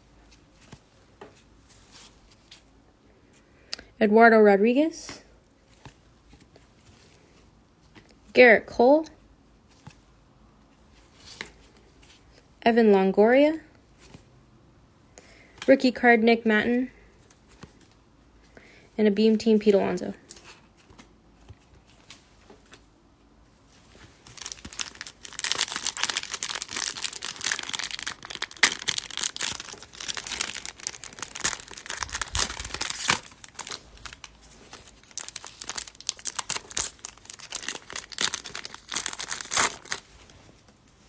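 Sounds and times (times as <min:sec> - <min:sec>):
plastic wrapper crinkling and tearing: 0:24.0 - 0:40.4.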